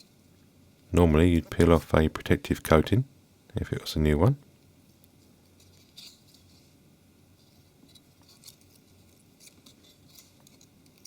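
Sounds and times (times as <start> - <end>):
faint clicks and scrapes of handling: 4.9 - 11.0.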